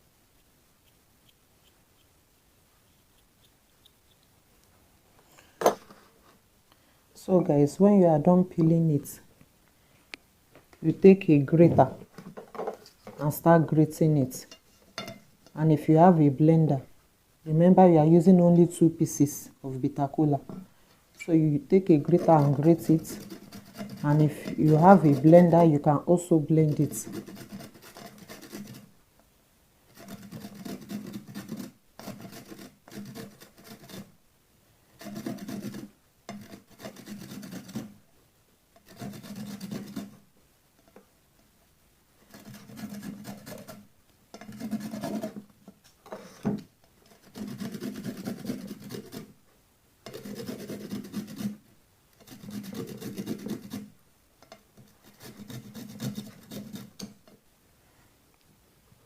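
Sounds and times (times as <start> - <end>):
nut rasping on hand grater: 21.9 - 25.7, 26.6 - 28.9, 29.9 - 34.1, 35.0 - 37.9, 38.8 - 40.2, 42.3 - 43.8, 44.4 - 45.4, 47.0 - 49.3, 50.1 - 51.6, 52.2 - 53.9, 54.9 - 57.1.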